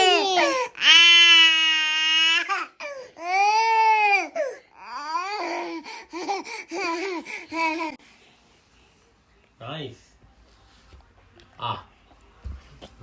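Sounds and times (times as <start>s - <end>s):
baby crying and wailing: 0.0s - 8.0s.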